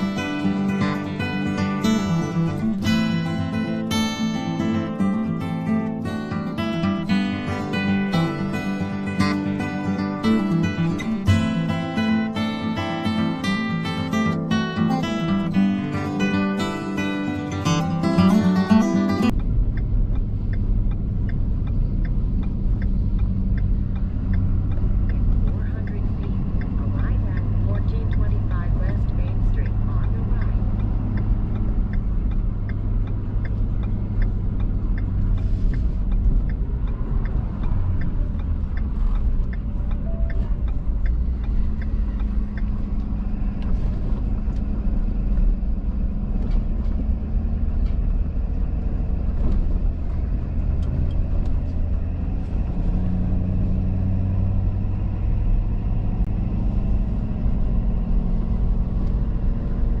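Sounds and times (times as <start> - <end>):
truck engine and road rumble: 0.0 - 60.0
light ticks: 19.3 - 60.0.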